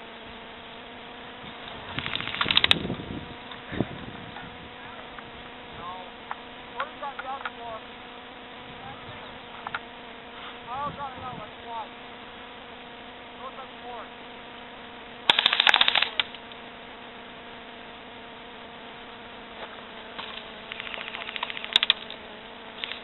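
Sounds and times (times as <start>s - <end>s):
airsoft gun full-auto bursts: 1.9s - 2.8s, 15.2s - 16.4s, 20.2s - 22.1s, 22.7s - 23.0s.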